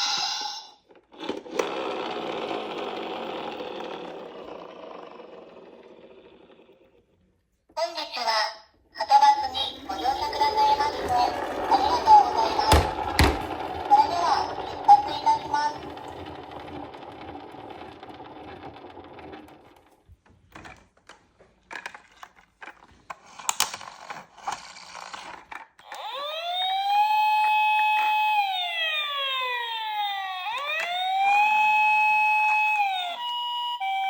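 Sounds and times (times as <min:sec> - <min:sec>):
toy electronic siren wailing: 0:09.2 - 0:16.0, 0:25.8 - 0:34.0
scattered clicks and knocks: 0:09.7 - 0:25.8.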